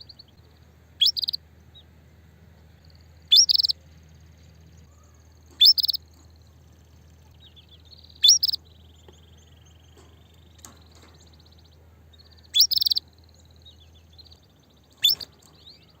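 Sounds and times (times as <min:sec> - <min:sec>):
canary twittering trills: 0:00.0 - 0:01.9, 0:02.8 - 0:16.0
canary calling: 0:01.0 - 0:01.4, 0:03.3 - 0:03.8, 0:04.9 - 0:16.0.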